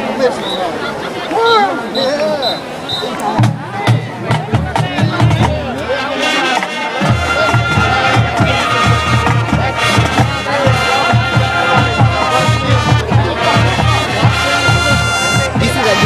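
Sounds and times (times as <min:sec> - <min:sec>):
low drums: 0:03.2 - 0:16.0
steady drum beat: 0:03.3 - 0:16.0
brass horns holding chords: 0:05.9 - 0:16.0.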